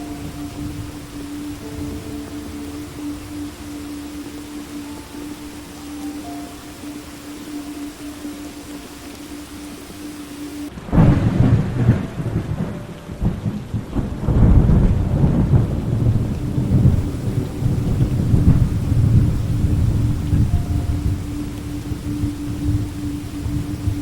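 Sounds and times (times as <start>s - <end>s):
rain falling: 0.0s - 24.0s
thunder crack and rumble: 10.0s - 24.0s.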